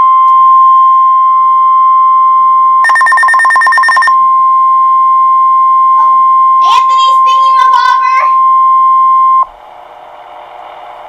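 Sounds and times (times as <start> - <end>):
steady warning alarm tone: 1.2 - 9.4
rapid high beeping: 2.8 - 4.2.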